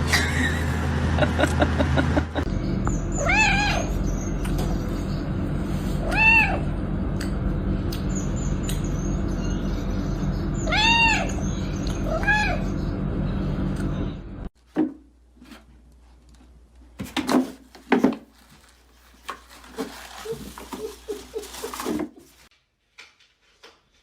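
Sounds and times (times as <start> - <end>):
background hum: 0.0 - 14.5
cat meowing: 3.2 - 3.9, 6.0 - 6.7, 10.7 - 11.4.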